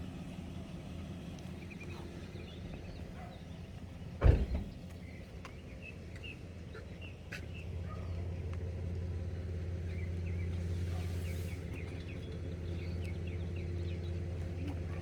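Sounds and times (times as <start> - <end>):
heavy thump: 4.2 - 4.8.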